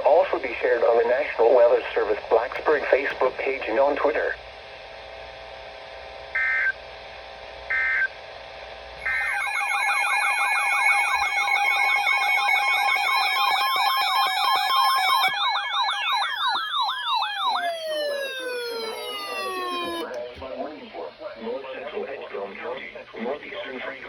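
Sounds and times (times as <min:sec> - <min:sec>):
electronic siren yelping: 0:06.4 - 0:06.7, 0:07.7 - 0:08.1, 0:09.0 - 0:20.2
alert data tones: 0:09.0 - 0:20.2
steady tones: 0:09.0 - 0:20.3.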